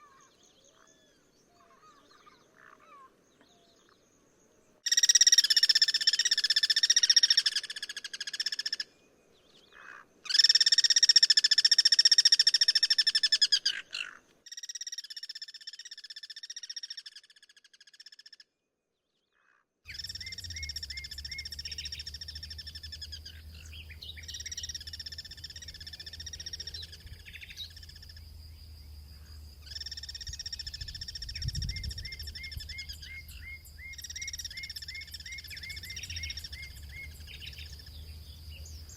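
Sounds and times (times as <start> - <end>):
cuckoos calling harshly: 19.9 - 28.2, 29.2 - 38.9.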